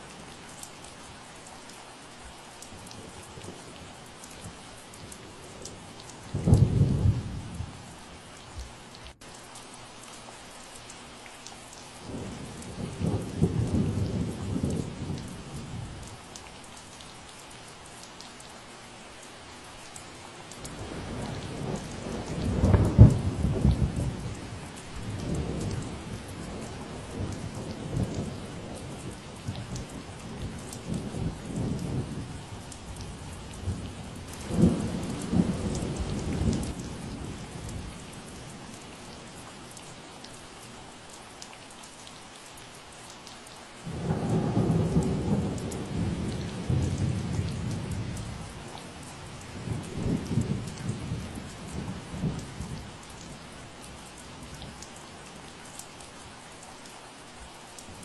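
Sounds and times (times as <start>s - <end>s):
steady rain falling: 0.0s - 58.0s
low thunder rumbles: 5.7s - 7.8s, 12.1s - 16.0s, 20.6s - 39.1s, 43.9s - 53.4s.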